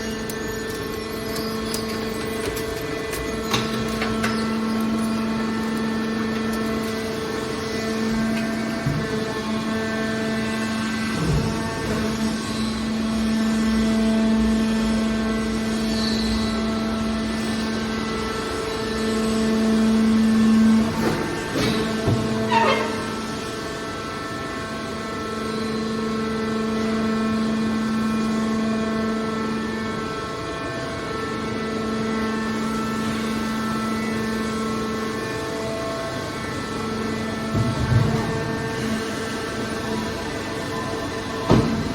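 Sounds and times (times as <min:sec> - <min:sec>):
hydraulic power unit humming: 0:00.0 - 0:41.9.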